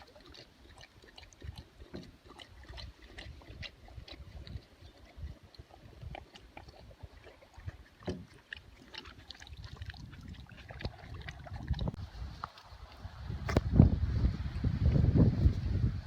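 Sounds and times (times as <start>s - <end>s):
paddle strokes in water: 0.0s - 13.6s
water dripping and trickling: 0.0s - 13.6s.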